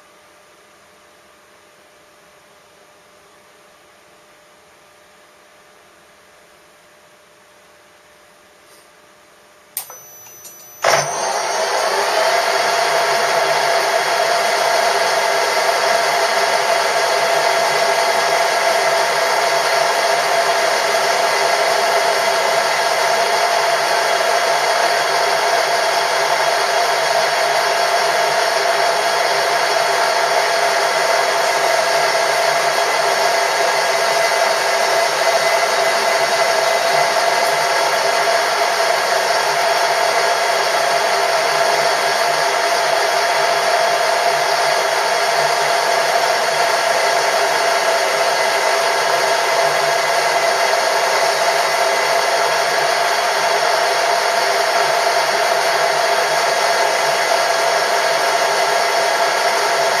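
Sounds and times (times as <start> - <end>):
machine tool motor whining: 9.8 - 16.4.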